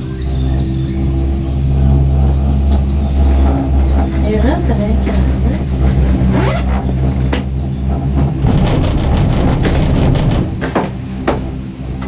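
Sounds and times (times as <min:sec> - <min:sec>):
gondola cabin rumbling on cable: 0:00.0 - 0:12.0
rapid rattling clatter: 0:03.1 - 0:12.0
single knocks: 0:08.4 - 0:11.6.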